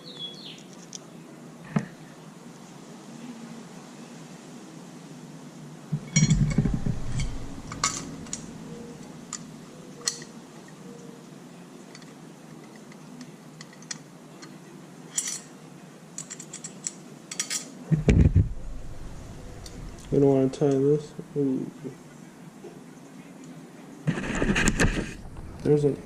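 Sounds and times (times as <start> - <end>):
low thump: 5.9 - 9.4, 17.9 - 21.2
metal tools clinking: 6.0 - 10.3, 13.6 - 15.5, 16.2 - 17.7.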